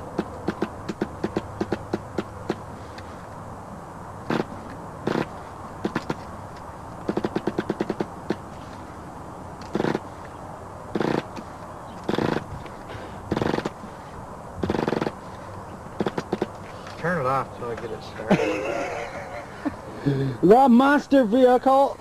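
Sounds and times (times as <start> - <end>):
engine sharp pops: 0.0 - 2.7, 4.3 - 6.3, 7.0 - 8.5, 10.9 - 13.8, 14.6 - 15.2, 16.0 - 16.6
engine cranking bursts: 4.2 - 6.2, 7.0 - 8.5, 9.6 - 10.1, 10.9 - 11.4, 12.0 - 12.7, 13.3 - 13.8, 14.6 - 15.2, 16.0 - 16.6.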